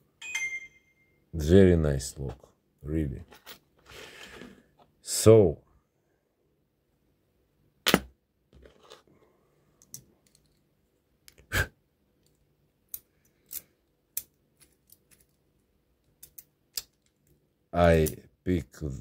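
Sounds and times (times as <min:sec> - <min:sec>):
light clicks of lock-picking tools: 0:12.2 - 0:15.4, 0:16.0 - 0:17.4.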